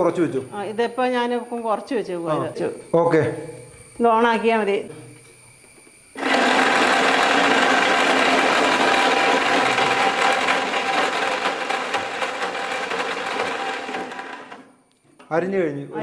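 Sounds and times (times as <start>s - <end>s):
mixer grinder motor running: 6.2s - 14.7s.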